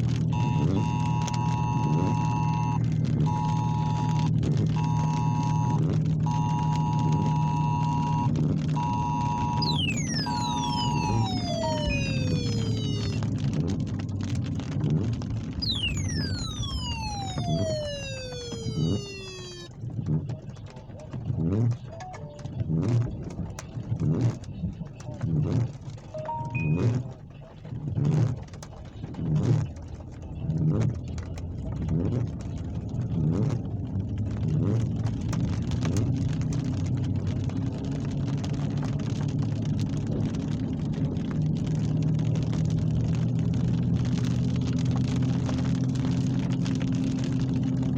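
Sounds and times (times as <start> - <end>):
rain: 0.0 - 21.3, 27.9 - 47.9
faint crackle: 0.0 - 47.9
whistling tone sliding down: 9.6 - 13.2, 15.6 - 19.7, 26.2 - 26.8.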